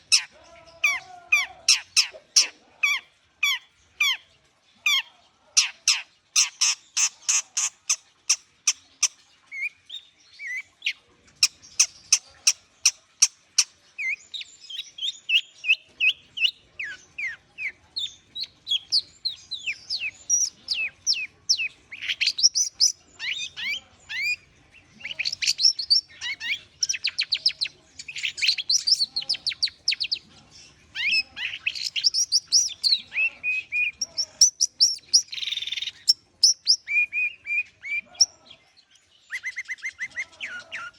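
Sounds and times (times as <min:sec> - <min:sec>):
bird singing chattering song: 0:00.0 - 0:40.9.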